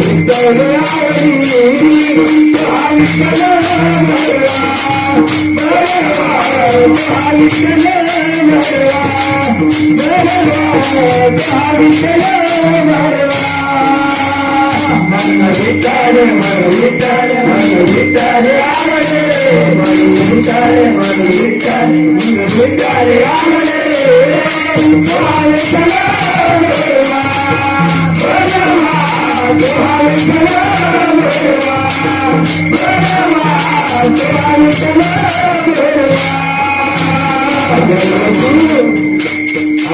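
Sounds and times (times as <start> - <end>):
hand cymbals jingling: 0.0 - 39.9
person singing: 0.0 - 39.9.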